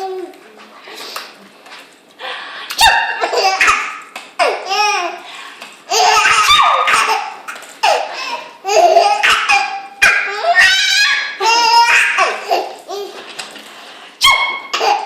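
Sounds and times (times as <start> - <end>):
baby laughing: 2.8 - 5.2, 5.9 - 13.2, 14.7 - 15.0.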